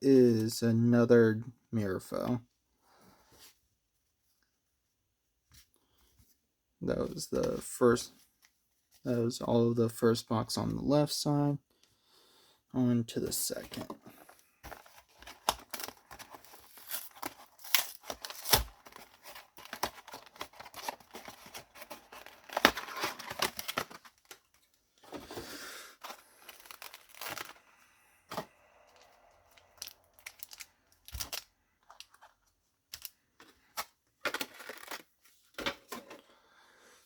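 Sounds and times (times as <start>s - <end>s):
packaging tearing and crinkling: 14.7s - 24.4s, 26.0s - 27.7s, 29.0s - 32.3s, 34.2s - 35.1s.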